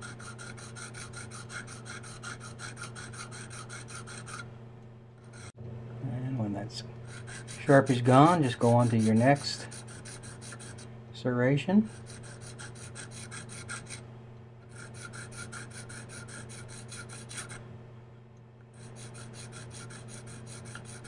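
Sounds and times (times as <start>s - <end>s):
sharpening rod rasping on knife: 0.0s - 4.4s, 7.1s - 10.8s, 11.9s - 14.0s, 14.7s - 17.6s, 18.8s - 21.0s.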